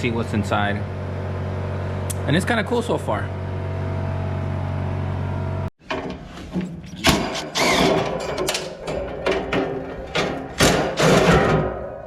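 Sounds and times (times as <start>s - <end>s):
low mechanical hum: 0.0s - 11.8s
knocks and clattering: 5.8s - 12.0s.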